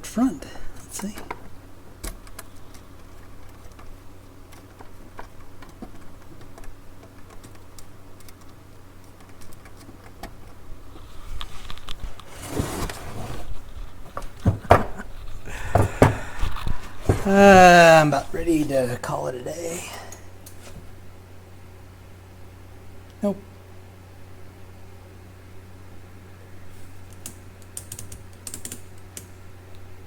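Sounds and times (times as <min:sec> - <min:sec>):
faint steady low hum: 0:00.0 - 0:30.0
rustling: 0:09.4 - 0:18.6
sharp knocks: 0:14.1 - 0:16.5.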